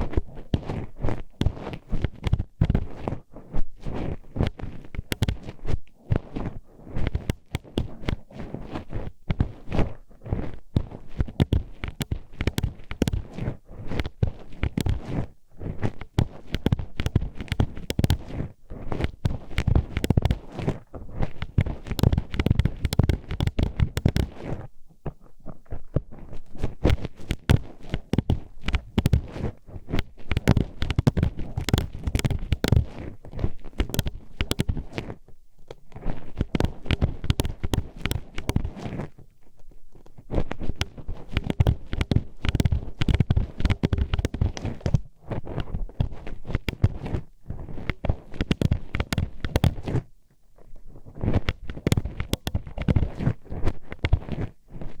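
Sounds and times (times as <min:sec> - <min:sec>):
hairpin clicking and scraping in ear: 0:11.1 - 0:15.2, 0:15.9 - 0:24.6, 0:26.4 - 0:50.0, 0:51.3 - 0:54.5.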